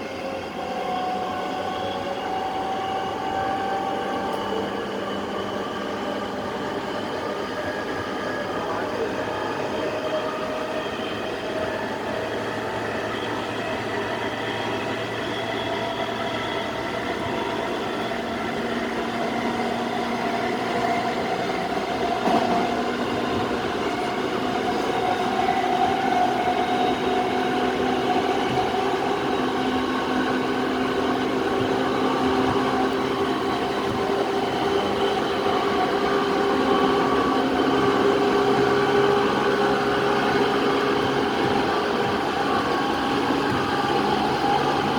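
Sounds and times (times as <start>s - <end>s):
electric train rolling: 0.0s - 44.9s
train motor whine: 10.4s - 44.9s.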